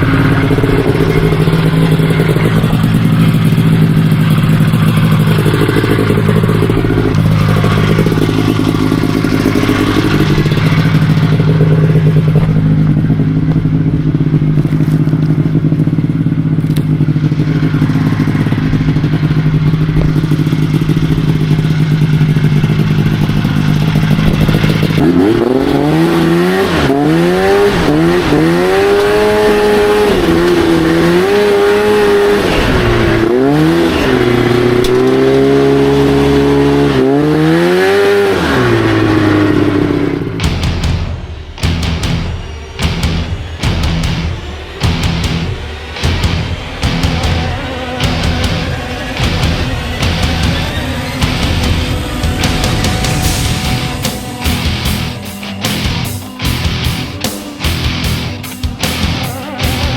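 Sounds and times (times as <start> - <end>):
buggy engine revving: 0.0 - 59.9.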